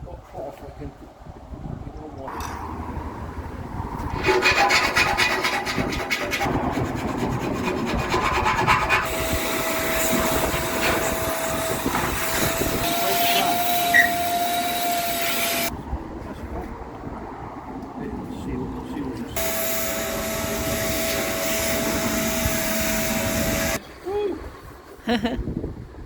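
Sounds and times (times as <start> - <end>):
rasping filing or sawing: 4.1 - 15.7, 19.4 - 23.8.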